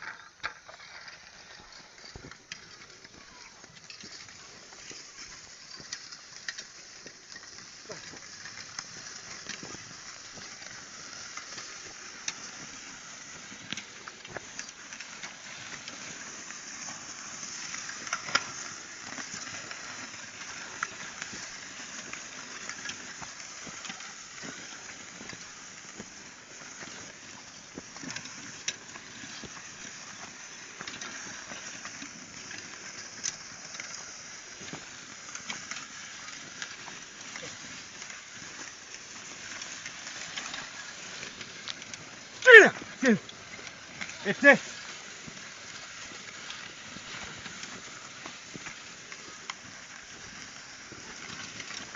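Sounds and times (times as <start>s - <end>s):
crackles and clicks: 0.0s - 51.9s
steady high hiss: 0.0s - 51.9s.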